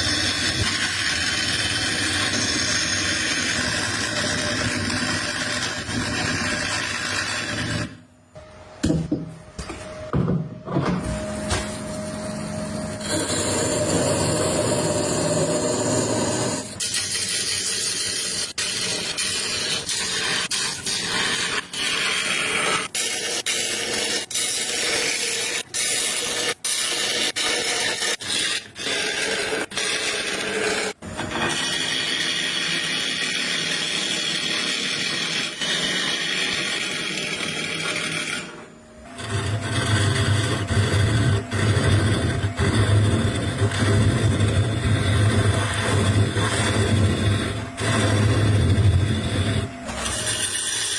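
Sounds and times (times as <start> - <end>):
power tool running: 0.0 - 10.2, 10.9 - 50.9
motor humming: 29.0 - 50.9.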